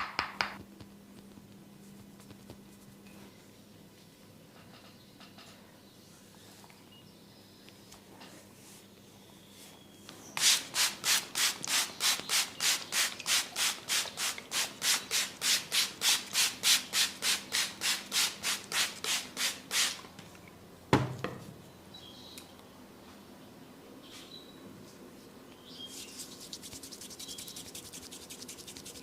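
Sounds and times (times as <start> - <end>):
massage strokes rubbing skin: 25.9 - 29.0.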